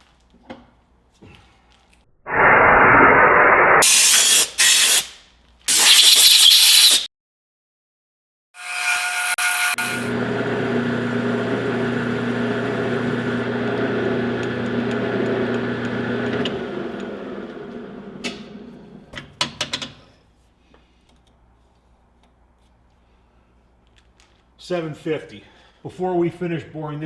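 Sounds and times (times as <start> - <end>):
metal lathe motor hum: 9.2 - 18.2.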